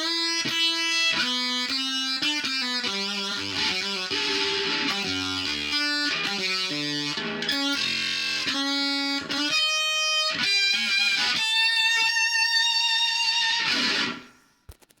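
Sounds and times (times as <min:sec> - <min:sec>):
electric guitar with octave effect: 0:00.0 - 0:14.6.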